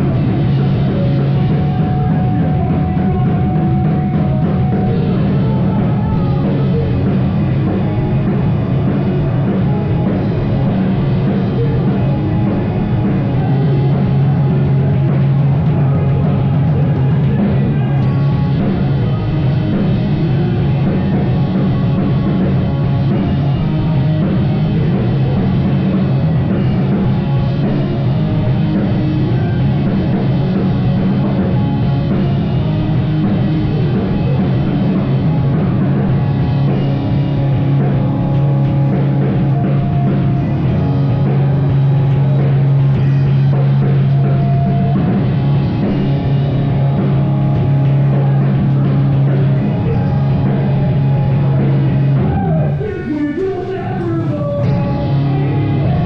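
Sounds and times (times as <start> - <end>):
drum kit: 0.0 - 56.0
live rock band playing: 0.0 - 56.0.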